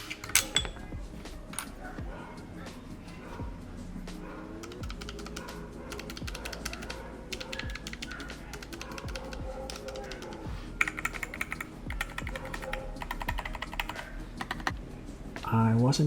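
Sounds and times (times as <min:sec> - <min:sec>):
background music with steady beat: 0:00.0 - 0:16.0
typing on mechanical keyboard: 0:04.6 - 0:14.8.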